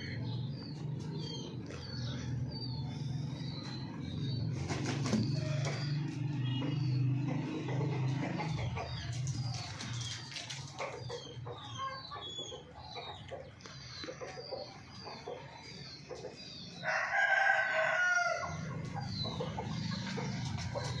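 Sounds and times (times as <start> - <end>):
chickens chirping: 0.0 - 21.0
rooster crowing: 16.8 - 18.6.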